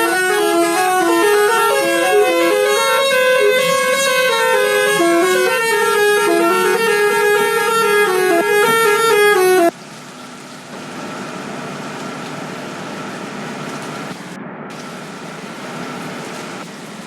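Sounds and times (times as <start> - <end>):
bus multi-tone air horn melody: 0.0 - 9.7.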